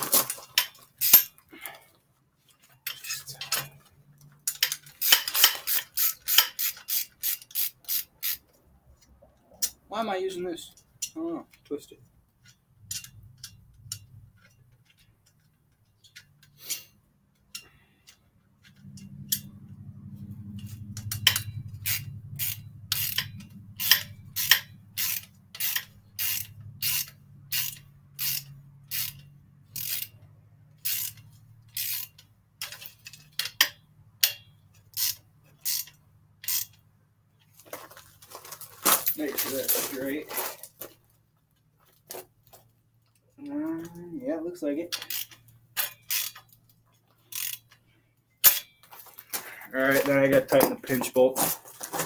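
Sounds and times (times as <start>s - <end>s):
ratchet tool clicking: 0.6s - 1.4s, 4.5s - 8.4s, 12.4s - 15.4s, 16.1s - 19.6s, 20.5s - 36.8s, 44.9s - 46.6s, 47.3s - 47.8s, 48.4s - 48.8s.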